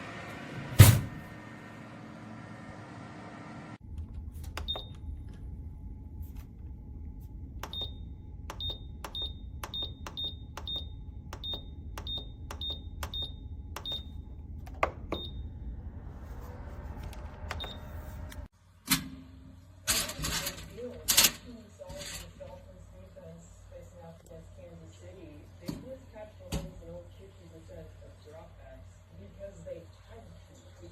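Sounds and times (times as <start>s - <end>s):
oven low rumble: 0.0s - 18.5s.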